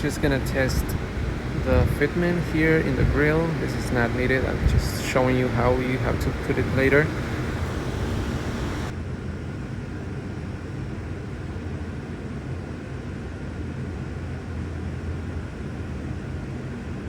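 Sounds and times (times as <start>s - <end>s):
background hiss: 0.0s - 8.9s
low mechanical hum: 0.0s - 17.0s.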